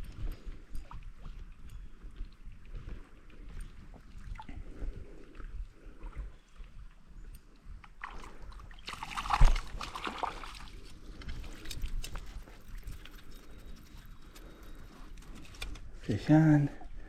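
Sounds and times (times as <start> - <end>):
river water trickling: 0.0 - 15.3
water splash: 8.0 - 10.7.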